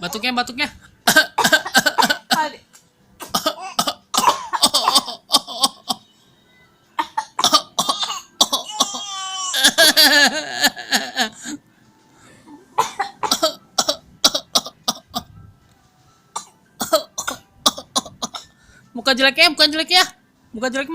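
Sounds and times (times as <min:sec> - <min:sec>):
toddler pretend coughing: 0:03.2 - 0:06.0, 0:07.0 - 0:09.5.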